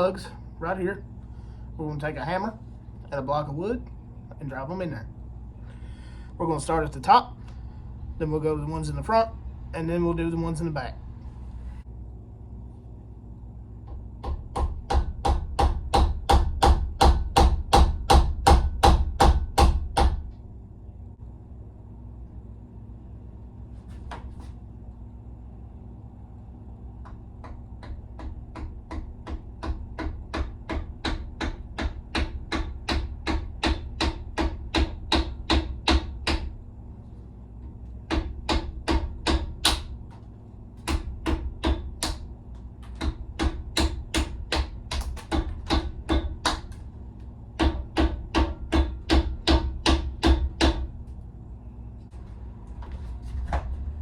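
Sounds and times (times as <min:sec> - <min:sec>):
hammer tapping on wood: 0:27.0 - 0:36.5, 0:42.8 - 0:46.7, 0:47.6 - 0:50.9.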